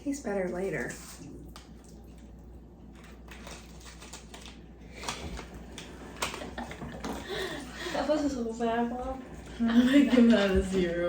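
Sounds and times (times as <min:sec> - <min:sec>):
crunchy snacks being chewed: 0:02.9 - 0:06.7.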